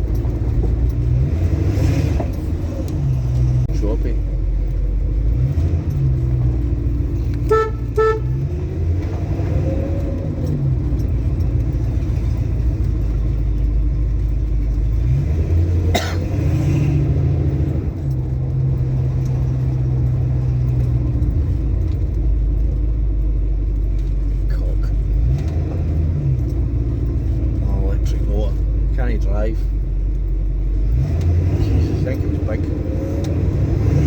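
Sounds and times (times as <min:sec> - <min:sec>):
car engine droning while driving: 0:00.0 - 0:34.0
car horn toots: 0:07.4 - 0:08.6.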